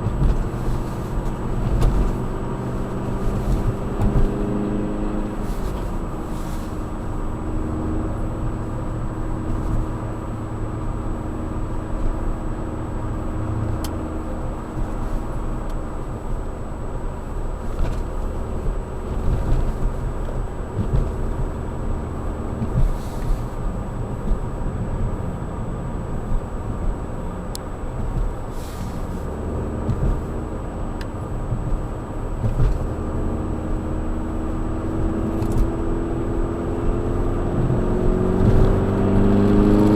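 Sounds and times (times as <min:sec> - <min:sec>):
car engine running: 0:00.0 - 0:39.9
road noise rumble: 0:00.0 - 0:39.9.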